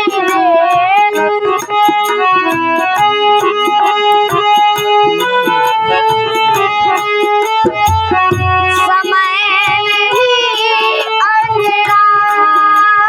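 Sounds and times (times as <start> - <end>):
electronic keyboard melody: 0.0 - 12.9
steady beat: 0.1 - 10.0.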